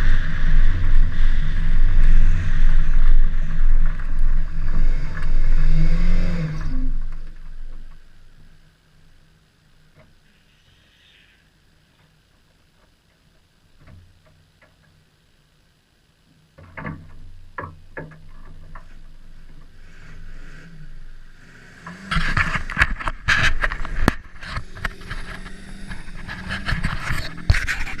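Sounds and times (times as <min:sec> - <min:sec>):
car engine hum: 0:00.0 - 0:10.3, 0:16.6 - 0:28.0.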